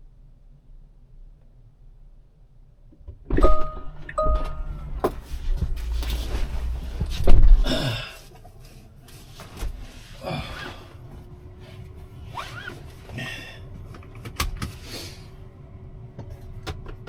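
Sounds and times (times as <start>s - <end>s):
short electronic beeps: 3.4s - 5.0s.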